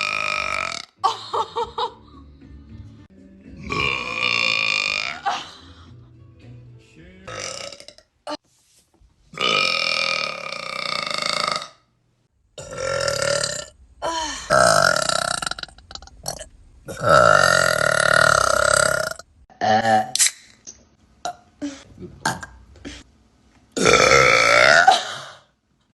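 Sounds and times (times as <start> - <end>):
woman burping: 0.0 - 1.1, 3.6 - 5.6, 12.6 - 20.2, 21.2 - 23.0, 23.8 - 25.5.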